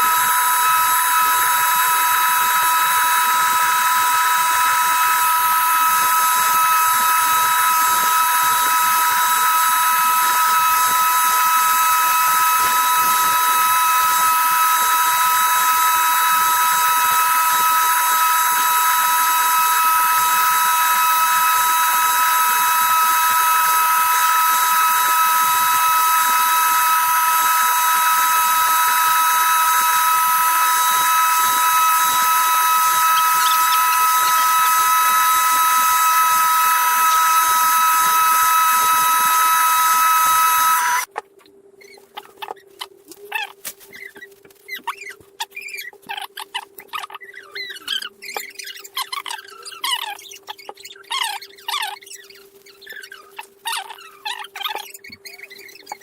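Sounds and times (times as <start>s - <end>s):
power tool whining: 0.0s - 41.1s.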